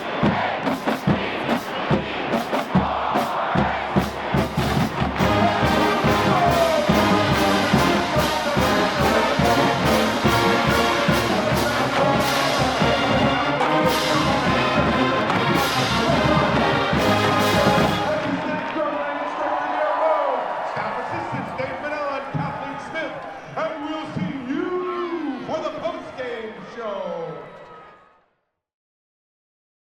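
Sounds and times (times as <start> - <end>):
drumline beating: 0.0 - 18.8
brass section melody: 4.2 - 18.5.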